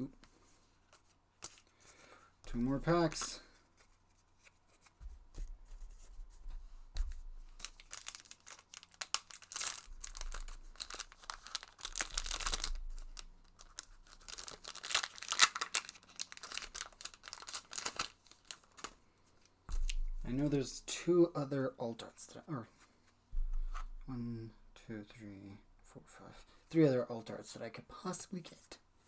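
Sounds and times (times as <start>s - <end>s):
foil pack tearing open: 7.6s - 18.9s
foil wrapper crinkling: 7.6s - 19.0s.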